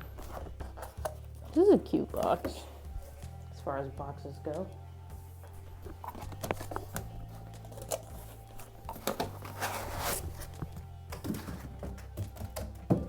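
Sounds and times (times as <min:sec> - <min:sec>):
box rustling: 0:00.0 - 0:03.3, 0:05.4 - 0:12.8
background music with bass line: 0:00.0 - 0:13.0
cardboard box taps and knocks: 0:08.9 - 0:13.0.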